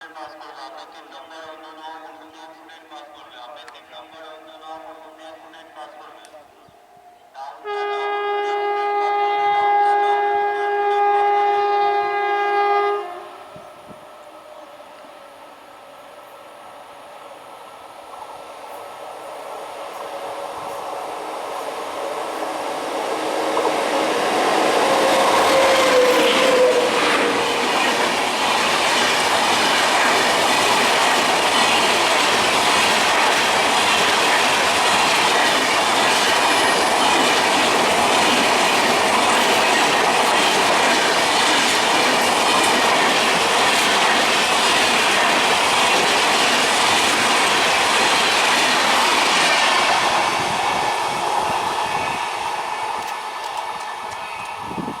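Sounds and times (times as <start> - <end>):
train wheels clattering over rails: 19.9 - 55.0.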